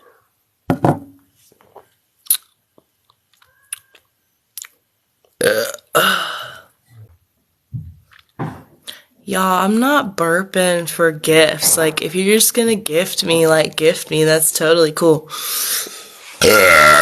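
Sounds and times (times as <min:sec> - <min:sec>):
woman burping loudly: 0:05.4 - 0:06.7, 0:16.4 - 0:17.0.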